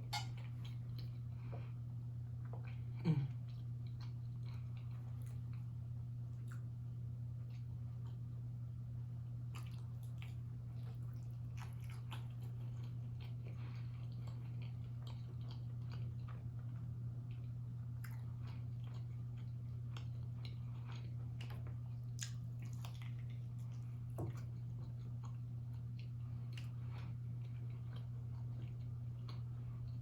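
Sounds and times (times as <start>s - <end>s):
chewing food: 0.0s - 8.4s, 9.4s - 30.0s
steady low hum: 0.0s - 30.0s.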